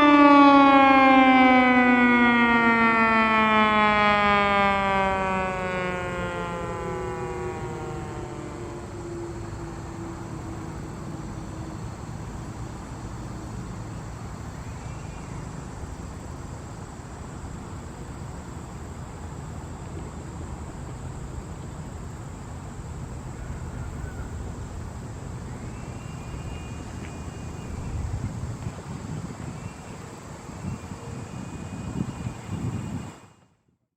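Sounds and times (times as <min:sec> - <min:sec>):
mechanical siren winding down: 0:00.0 - 0:11.7
low outdoor rumble: 0:04.2 - 0:32.8.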